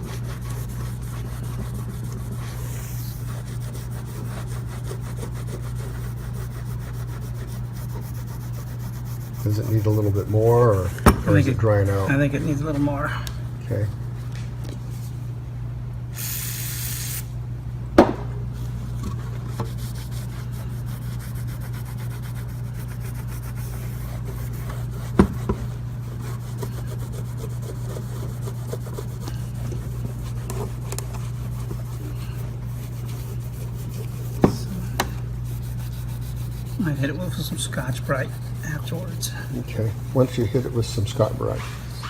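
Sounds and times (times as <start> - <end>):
rag scrubbing metal plate: 0.0 - 10.6, 19.6 - 41.9
steady low hum: 0.0 - 42.0
aerosol spray: 16.2 - 17.3.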